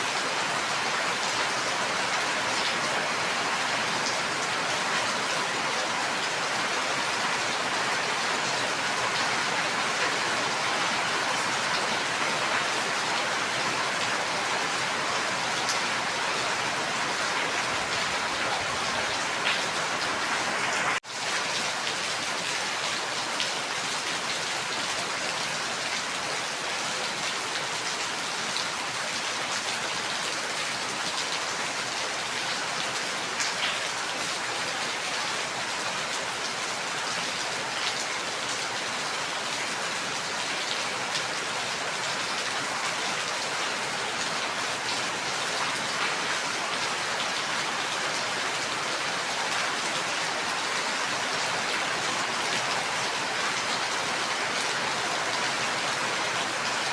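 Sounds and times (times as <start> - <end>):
rain pattering on a surface: 0.0 - 56.9.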